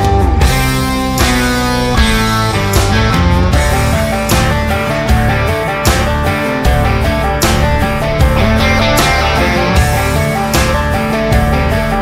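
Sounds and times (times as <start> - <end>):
rock music: 0.0 - 12.0.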